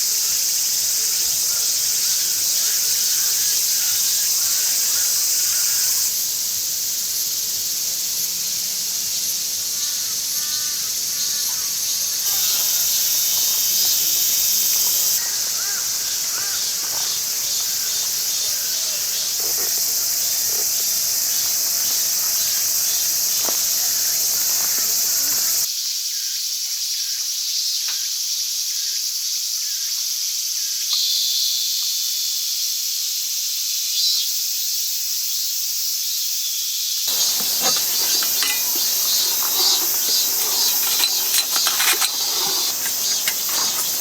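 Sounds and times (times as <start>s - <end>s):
crickets and insects chirping: 0.0s - 25.7s, 37.1s - 44.0s.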